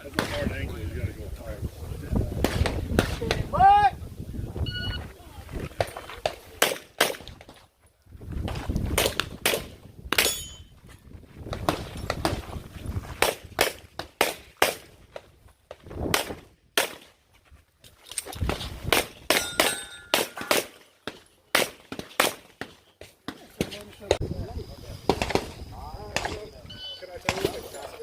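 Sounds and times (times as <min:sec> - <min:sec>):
footsteps and movement: 0:04.8 - 0:24.2
pistol shots: 0:06.6 - 0:07.3, 0:09.0 - 0:10.4, 0:16.1 - 0:17.1, 0:18.9 - 0:22.7.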